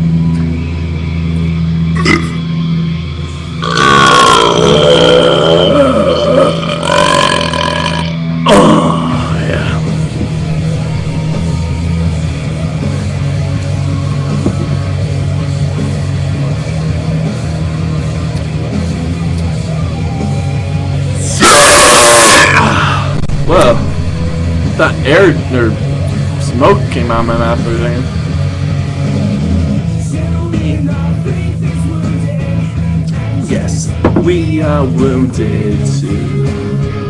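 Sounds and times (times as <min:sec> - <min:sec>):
rock music: 0:00.0 - 0:37.0.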